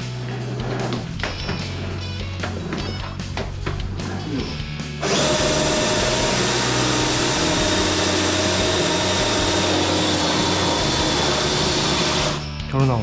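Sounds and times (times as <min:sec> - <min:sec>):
wet vacuum motor whining: 0:05.0 - 0:12.4.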